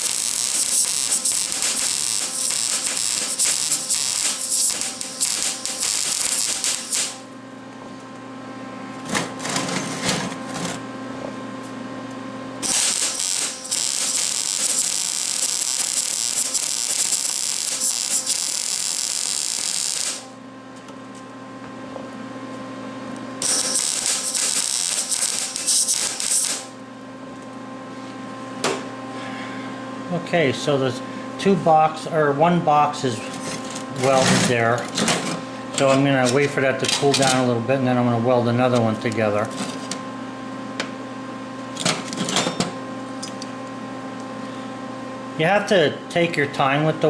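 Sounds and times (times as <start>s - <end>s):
welder arc crackling: 0.0s - 7.3s, 12.6s - 20.4s, 23.4s - 26.8s
steady hum: 0.0s - 47.0s.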